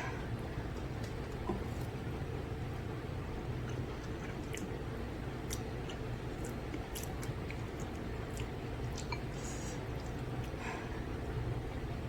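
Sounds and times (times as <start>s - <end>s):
low background hum: 0.0s - 12.0s
wet chewing: 3.6s - 4.8s, 5.4s - 9.3s.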